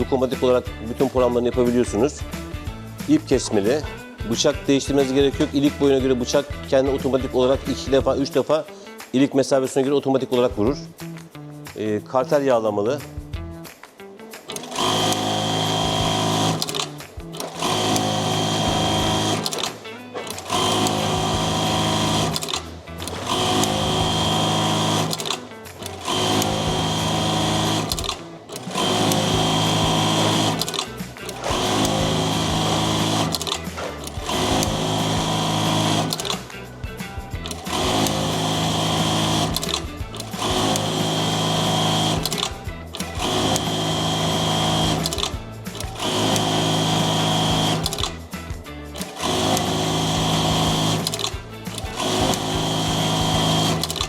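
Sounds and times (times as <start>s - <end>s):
sewing machine stitching: 14.4s - 36.6s, 37.4s - 48.2s, 49.0s - 54.0s.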